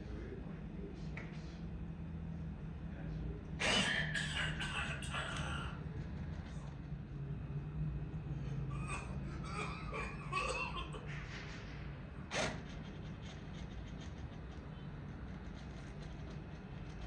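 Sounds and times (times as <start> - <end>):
person coughing: 3.6 - 5.5, 8.7 - 11.1.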